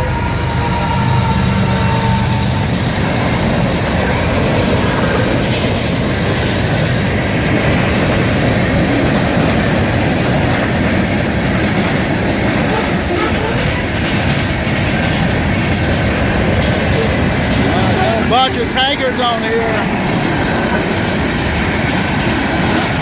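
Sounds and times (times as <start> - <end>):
locomotive horn: 0.0 - 4.6, 12.4 - 14.1
train wheels clattering on rail: 0.0 - 23.0.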